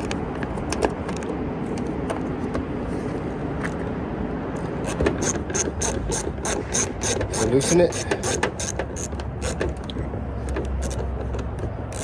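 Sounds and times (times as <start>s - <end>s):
steady background noise: 0.0s - 12.0s
ratchet clicking: 4.8s - 9.8s, 10.8s - 12.0s.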